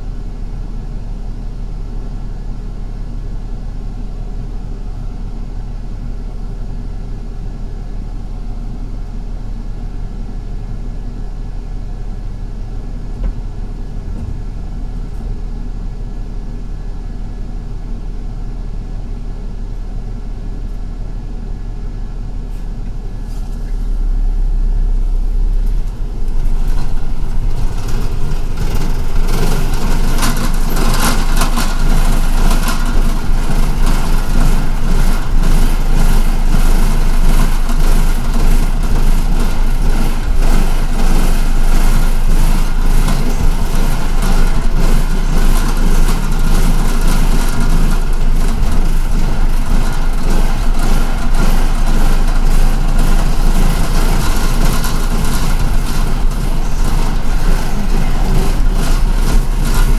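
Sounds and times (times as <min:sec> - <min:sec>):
bus engine drone: 0:00.0 - 0:59.9.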